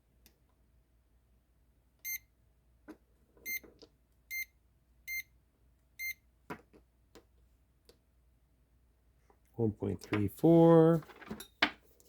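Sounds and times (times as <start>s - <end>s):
multimeter beeping: 2.0s - 2.2s, 4.3s - 4.5s, 5.1s - 5.3s.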